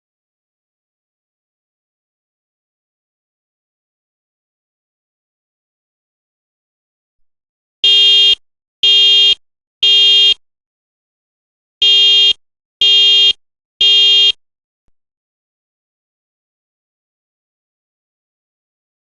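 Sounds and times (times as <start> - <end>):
fire alarm horn blasts: 7.8 - 10.4, 11.8 - 14.4.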